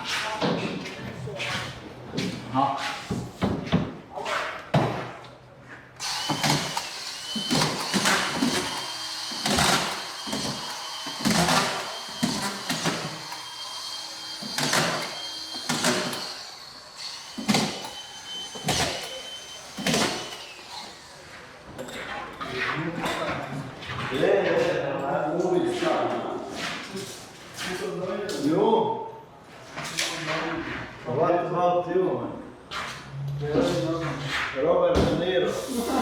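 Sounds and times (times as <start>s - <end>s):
power tool motor whining: 6.0s - 21.4s.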